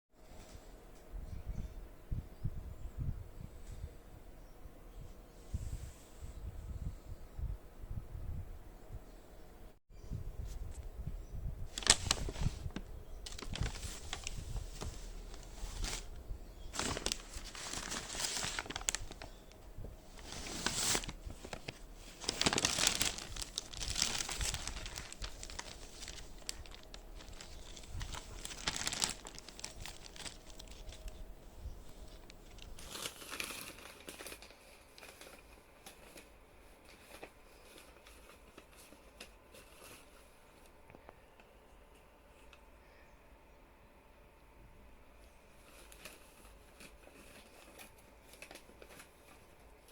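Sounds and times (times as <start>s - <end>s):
packaging crinkling and rustling: 11.7s - 41.1s, 45.5s - 49.9s.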